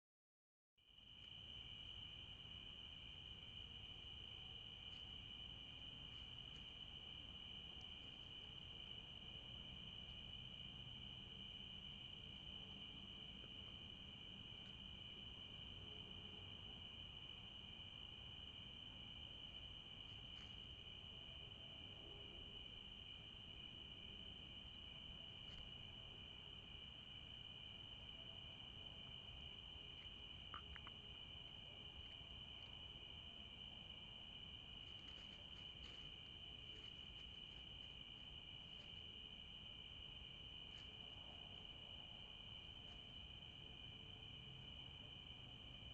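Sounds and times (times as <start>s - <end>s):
crickets trilling: 0.9s - 45.9s
faint ticks: 30.0s - 31.2s.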